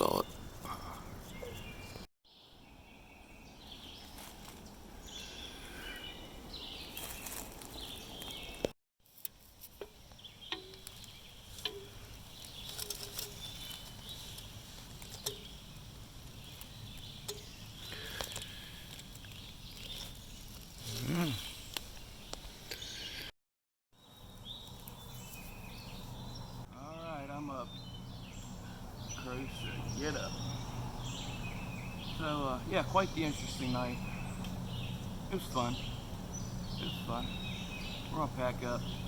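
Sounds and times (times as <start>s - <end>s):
songbirds chirping: 0.0s - 23.3s, 24.0s - 39.0s.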